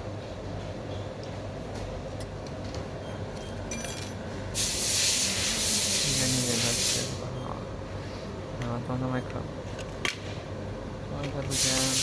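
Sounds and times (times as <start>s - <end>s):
aerosol can spraying: 4.6s - 7.2s, 11.5s - 12.0s.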